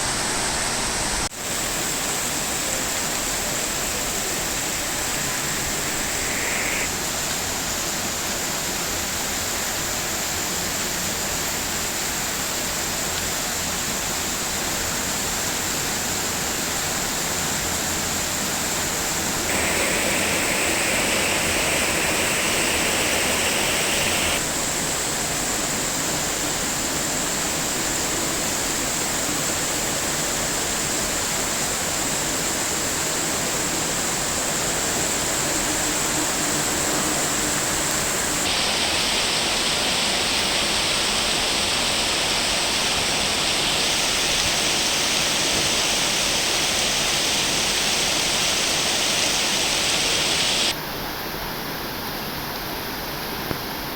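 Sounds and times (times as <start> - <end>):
heavy rain pouring: 0.0 - 7.0, 16.6 - 50.8
running water: 16.9 - 30.0.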